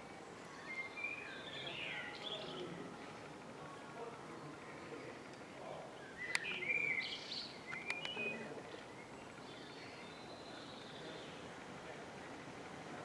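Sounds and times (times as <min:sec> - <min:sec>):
outdoor background hiss: 0:00.0 - 0:13.0
small bird chirping: 0:06.0 - 0:11.4
sharp clicks: 0:07.7 - 0:08.2.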